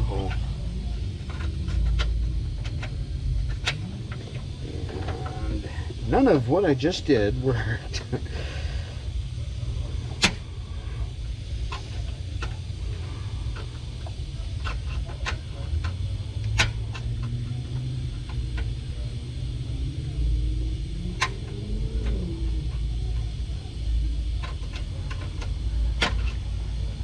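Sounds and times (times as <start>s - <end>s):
steady low rumble: 0.0s - 27.0s
sharp clicks and knocks: 1.2s - 4.4s, 13.6s - 17.4s
faint rising and falling tone: 16.4s - 23.6s.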